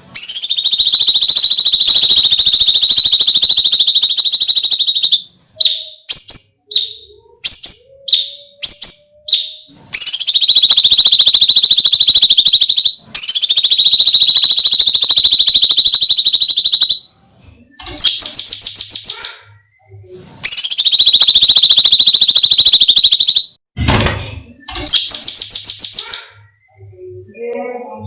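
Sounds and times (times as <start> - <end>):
bird rapid high trills: 0.2 - 6.8, 7.6 - 17.0, 20.4 - 23.6
bird whistled phrases: 0.2 - 23.6, 24.4 - 26.9.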